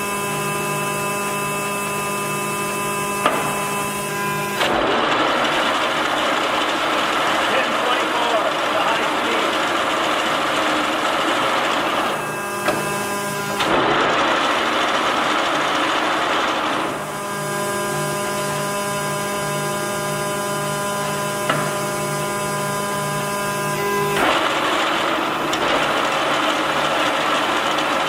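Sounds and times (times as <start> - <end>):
lathe gear-drive noise: 3.0 - 17.2, 21.0 - 28.0.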